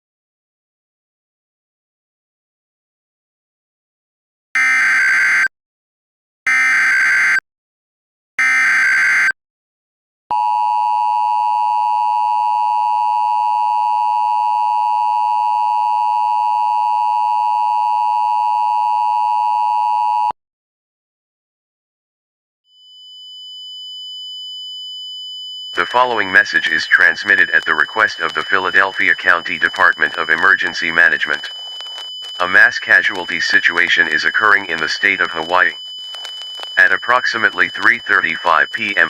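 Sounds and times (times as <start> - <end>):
digital data tone bursts: 25.8 - 39.0.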